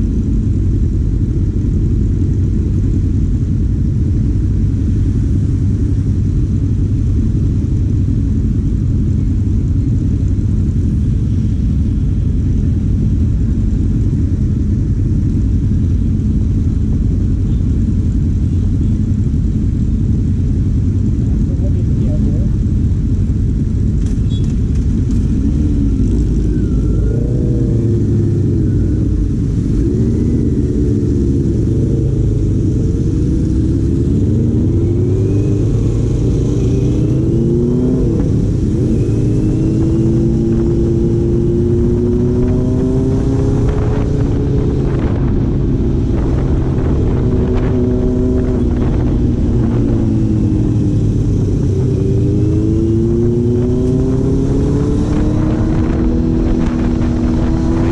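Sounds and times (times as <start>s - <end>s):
car engine accelerating: 23.6s - 57.9s.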